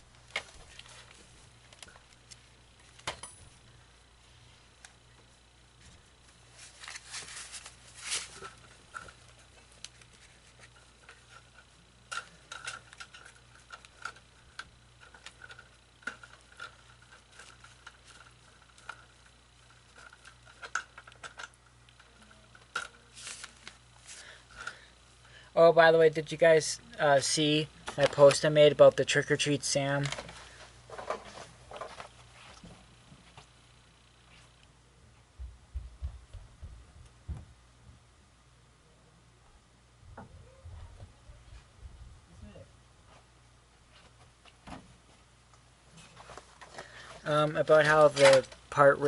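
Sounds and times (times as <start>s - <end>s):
handling clicks and rustles: 4.8s - 24.8s, 27.4s - 33.6s, 45.9s - 49.0s.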